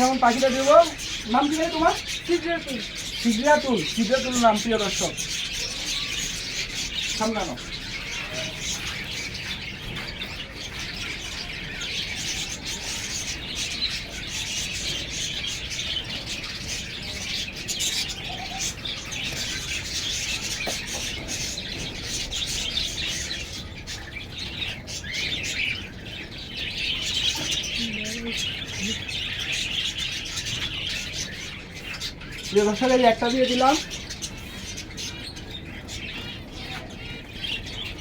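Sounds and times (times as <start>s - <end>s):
cage birds chirping: 0.0s - 38.0s.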